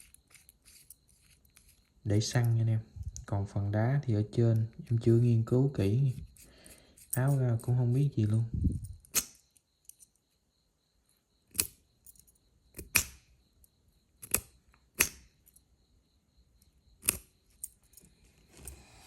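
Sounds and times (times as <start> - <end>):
metal lighter clicking: 14.2 - 15.2.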